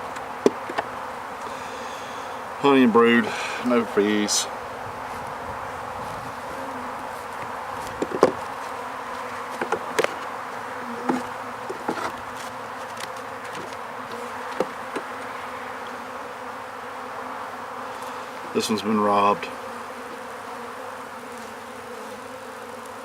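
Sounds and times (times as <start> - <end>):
wooden hive frames knocking: 0.0 - 1.0, 6.2 - 15.4
bees buzzing: 0.0 - 23.0.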